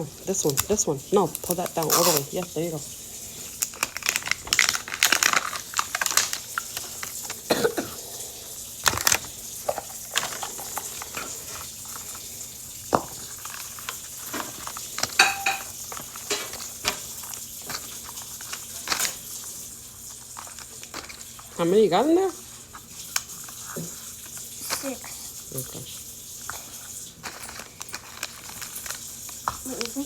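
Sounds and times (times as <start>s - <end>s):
plastic toys clicking and knocking: 3.6s - 7.5s, 12.9s - 19.5s, 20.1s - 21.5s, 27.2s - 30.0s.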